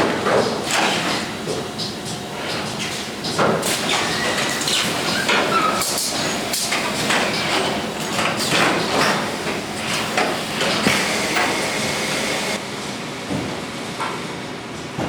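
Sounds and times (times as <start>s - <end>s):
welding machine clanks and knocks: 0.0s - 11.8s.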